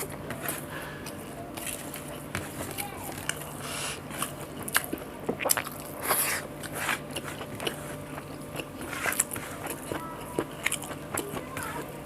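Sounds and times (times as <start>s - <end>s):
chewing with wet mouth clicks: 4.1s - 11.5s.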